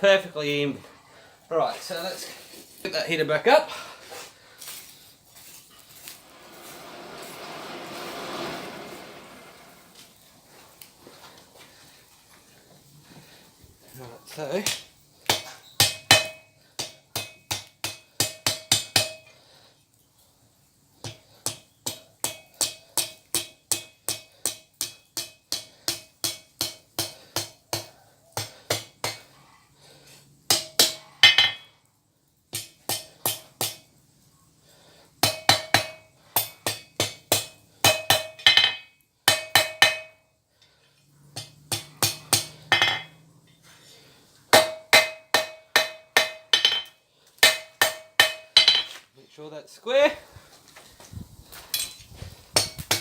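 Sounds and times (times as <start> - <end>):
hammer striking steel on anvil: 14.6 - 19.3, 21.0 - 29.3, 30.5 - 31.7, 32.5 - 33.9, 35.2 - 40.2, 41.4 - 43.2, 44.5 - 49.0.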